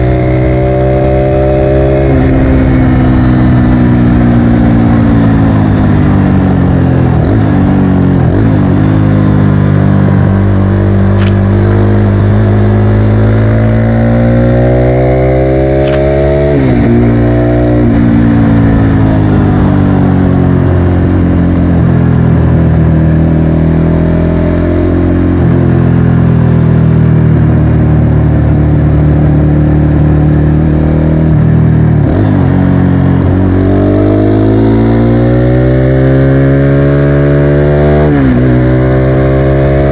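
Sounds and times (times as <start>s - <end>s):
motorcycle engine shifting gears: 10.3s - 22.0s.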